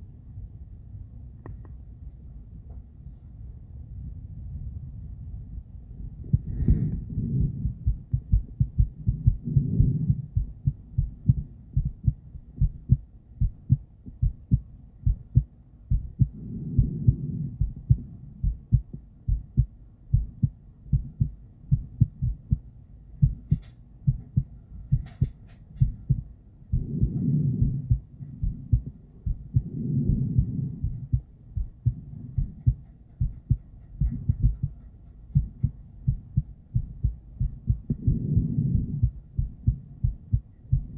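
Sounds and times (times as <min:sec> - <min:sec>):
faint clicks: 0:01.4 - 0:01.8
heartbeat through doppler device: 0:06.0 - 0:40.9.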